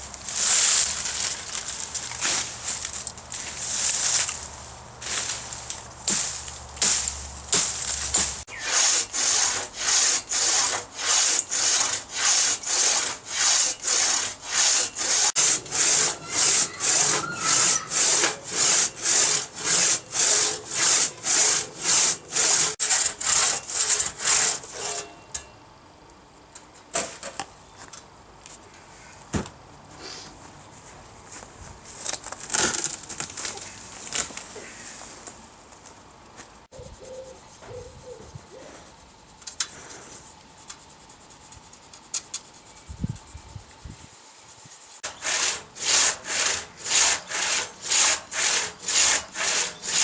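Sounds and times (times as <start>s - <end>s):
hand saw cutting wood: 6.1s - 25.1s, 45.0s - 50.0s.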